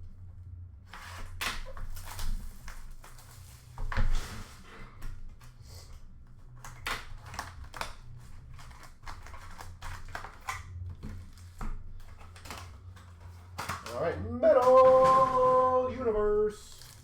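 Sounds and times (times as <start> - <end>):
wrappers crinkling: 6.6 - 17.0.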